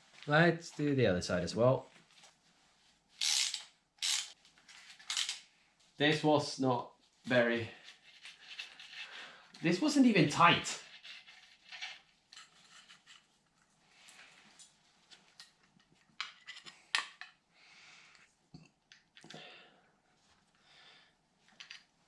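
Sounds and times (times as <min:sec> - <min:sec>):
soft rustling: 0:01.8 - 0:03.2
tools clicking and clinking: 0:03.2 - 0:04.4, 0:05.0 - 0:05.4.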